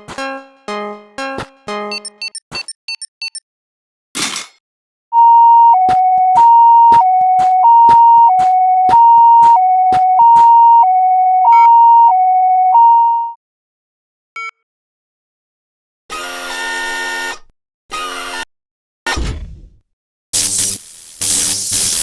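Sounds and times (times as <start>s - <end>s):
short beep: 1.9s - 3.4s
two-tone ambulance siren: 5.2s - 13.4s.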